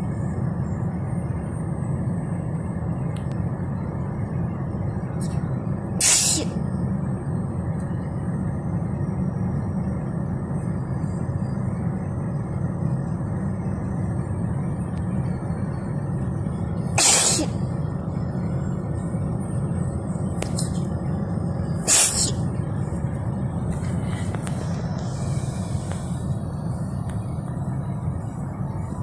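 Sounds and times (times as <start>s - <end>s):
car road noise rumble: 0.0s - 29.0s
sharp sneezes: 6.0s - 6.6s, 17.0s - 17.6s, 21.9s - 22.4s.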